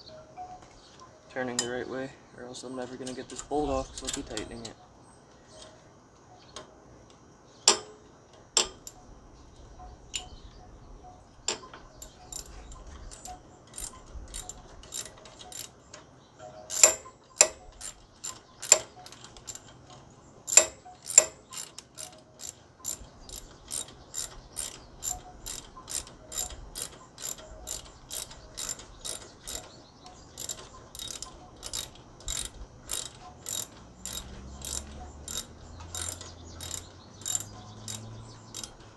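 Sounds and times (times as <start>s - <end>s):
ratchet wrench clicking: 3.0s - 4.6s, 11.5s - 15.9s, 16.7s - 19.8s, 20.5s - 38.9s.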